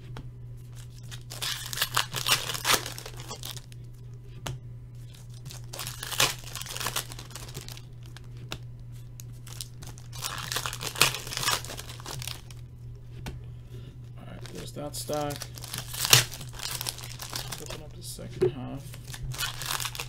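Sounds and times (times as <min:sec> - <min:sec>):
wrappers tearing and crinkling: 0:00.7 - 0:03.7, 0:05.0 - 0:08.3, 0:09.2 - 0:12.6, 0:14.3 - 0:18.0, 0:18.9 - 0:20.0.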